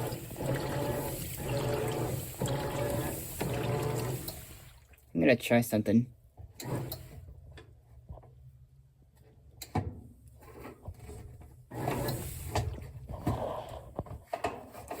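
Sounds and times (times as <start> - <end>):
washing machine motor hum: 0.0 - 5.0, 11.7 - 13.6.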